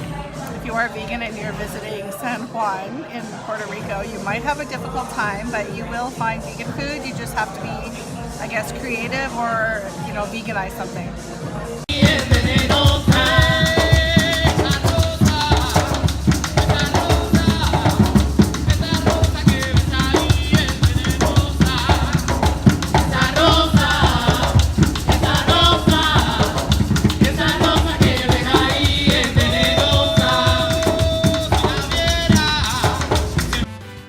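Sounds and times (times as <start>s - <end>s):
driving drum beat: 3.7s - 33.8s
shaker-like percussion: 3.8s - 33.7s.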